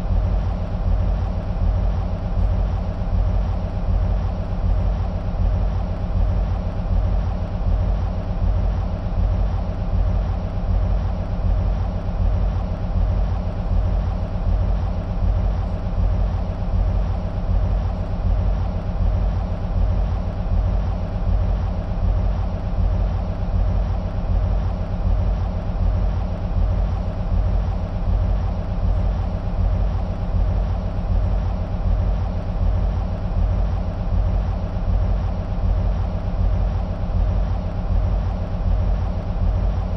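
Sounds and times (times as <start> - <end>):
diesel locomotive engines idling: 0.0 - 39.9.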